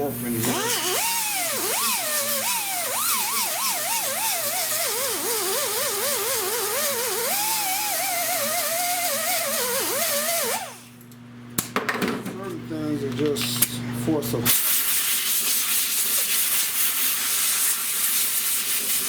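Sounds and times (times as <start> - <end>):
power grinder whining: 0.0 - 11.0.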